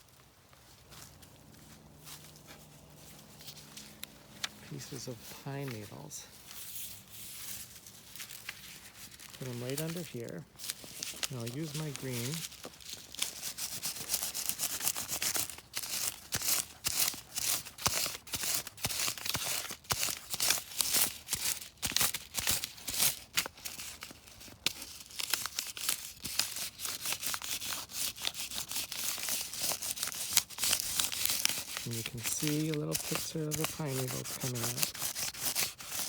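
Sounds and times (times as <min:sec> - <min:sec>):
crayon scratching on paper: 0:13.2 - 0:18.6, 0:26.6 - 0:36.0.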